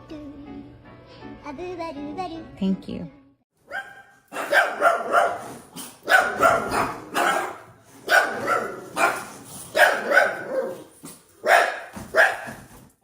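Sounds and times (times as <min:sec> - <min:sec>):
dog barking: 0:03.6 - 0:12.7.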